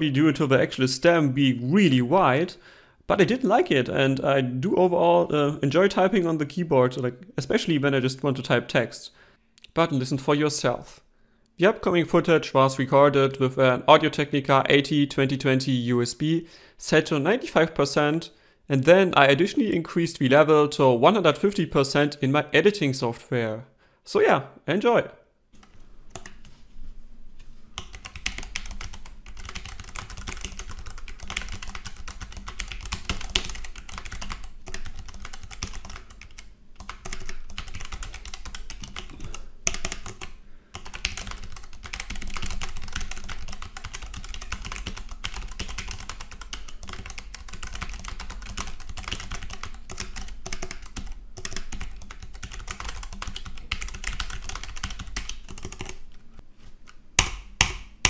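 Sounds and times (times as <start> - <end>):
fast typing on mechanical keyboard: 27.8 - 56.0.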